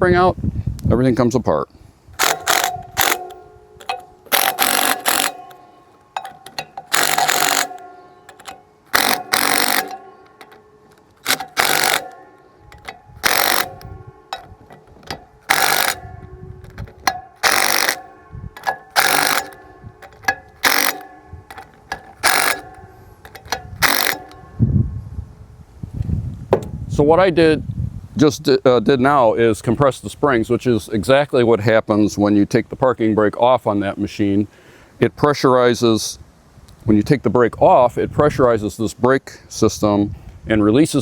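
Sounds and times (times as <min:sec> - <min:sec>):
ratchet wrench clicking: 0:02.2 - 0:24.5
faint metallic ringing: 0:02.2 - 0:25.6.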